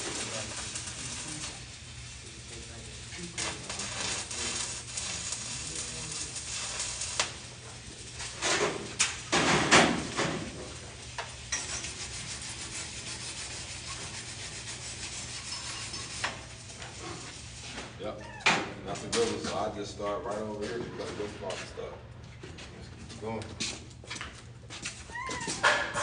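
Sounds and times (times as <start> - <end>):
metal scraping and crackling: 0.0 - 18.0.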